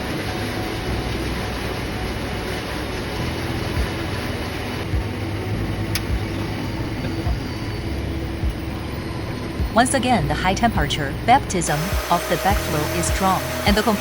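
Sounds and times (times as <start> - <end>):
machine hum and whir: 0.0 - 14.0
soft low thumps: 4.9 - 5.2, 6.0 - 6.3, 8.3 - 8.8, 9.5 - 10.0, 10.7 - 13.8.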